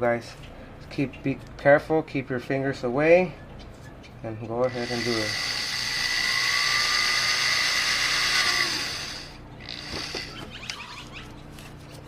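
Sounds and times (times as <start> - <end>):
power drill boring into plastic: 4.6 - 10.5.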